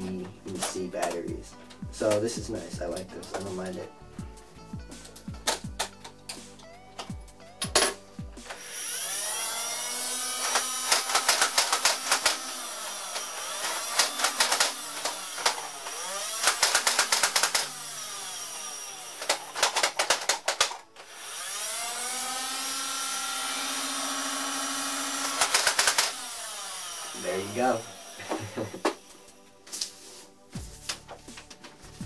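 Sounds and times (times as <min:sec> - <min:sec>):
flywheel motors whirring: 0:08.5 - 0:29.2.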